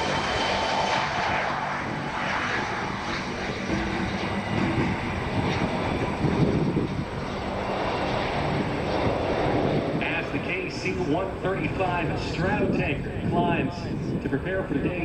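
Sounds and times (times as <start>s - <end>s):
jet engines running: 0.0s - 15.0s.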